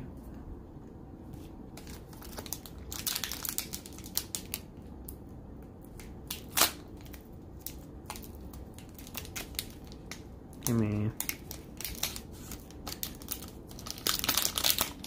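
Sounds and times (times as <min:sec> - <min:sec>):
foil wrapper crinkling: 0:01.8 - 0:04.7, 0:06.2 - 0:15.0.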